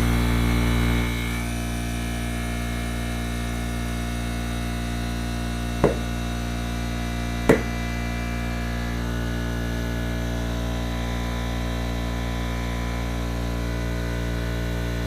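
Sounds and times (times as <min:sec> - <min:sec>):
tire bead pops: 0:05.8 - 0:06.2, 0:07.5 - 0:07.8
air compressor humming: 0:05.8 - 0:06.5, 0:07.5 - 0:07.9.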